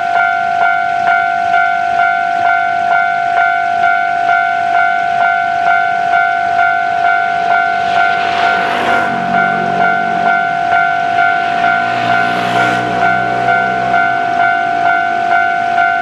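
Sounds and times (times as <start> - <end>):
level-crossing alarm clanging: 0.0 - 16.0
rushing noise: 5.1 - 15.8.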